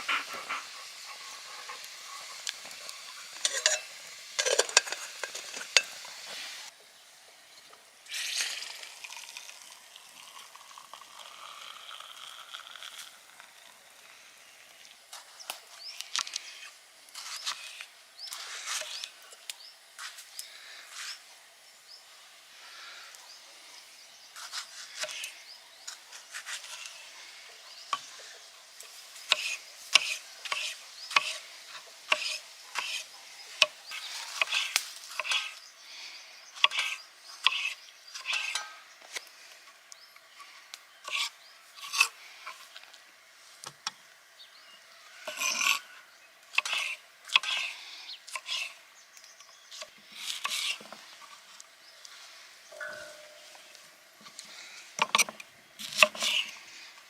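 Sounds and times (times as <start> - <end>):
scraping and rubbing strokes: 16.2 - 19.2, 24.4 - 27.4, 28.9 - 35.6, 46.6 - 48.8, 49.8 - 54.8, 55.8 - 56.6.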